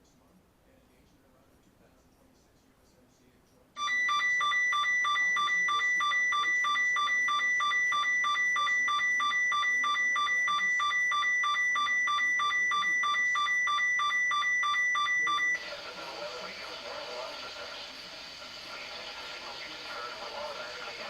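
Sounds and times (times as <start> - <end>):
alarm tone with pulsing beep: 3.8 - 15.8.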